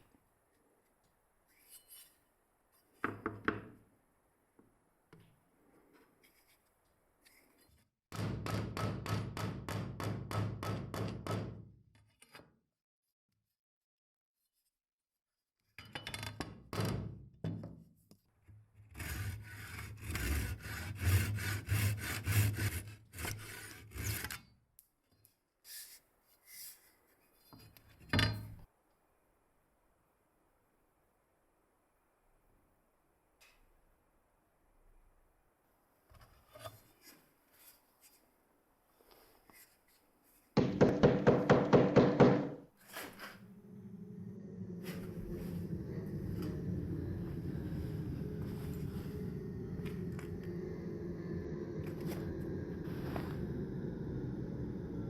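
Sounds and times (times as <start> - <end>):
abrasive rubbing strokes: 42.8 - 55.0.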